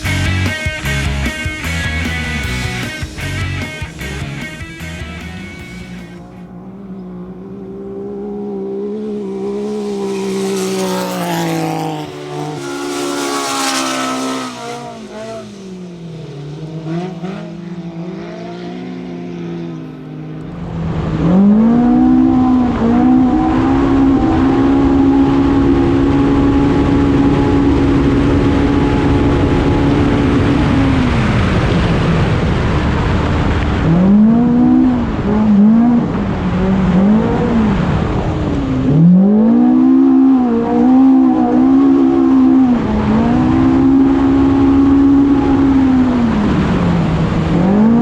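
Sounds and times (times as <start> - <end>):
loud rushing noise: 0.0 - 6.3, 8.4 - 18.5
race car engine revving: 0.0 - 48.0.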